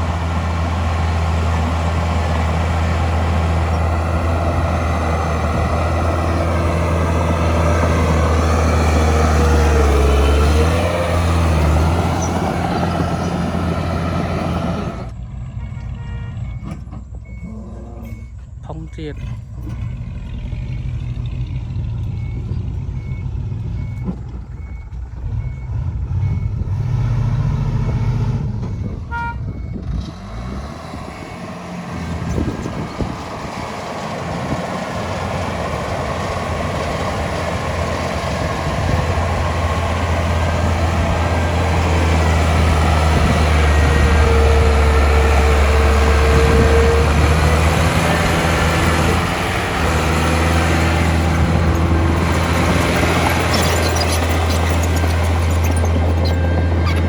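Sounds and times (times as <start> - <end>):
diesel machinery engine: 0.0 - 57.0
reversing alarm beeping: 3.7 - 20.6, 22.1 - 33.7.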